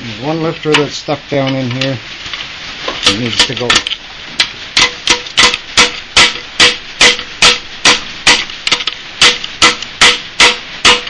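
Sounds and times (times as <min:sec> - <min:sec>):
hammer blows on metal: 0:03.0 - 0:11.0.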